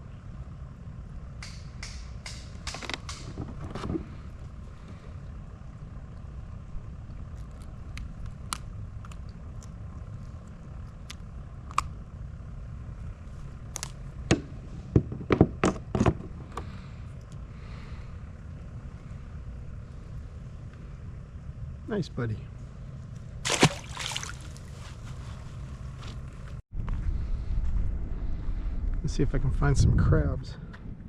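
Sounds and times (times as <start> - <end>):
low rumble: 22.5 - 31.0.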